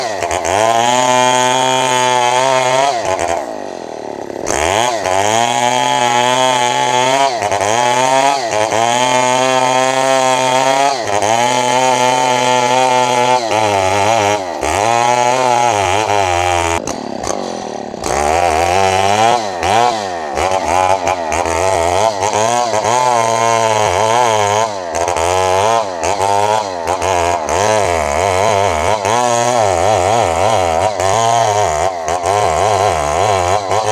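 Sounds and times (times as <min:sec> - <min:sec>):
chainsaw cutting wood: 0:00.0 - 0:33.9.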